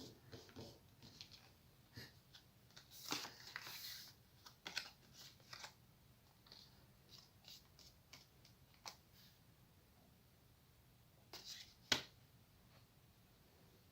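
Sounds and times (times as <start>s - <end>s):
paper rustling and folding: 2.3s - 5.8s.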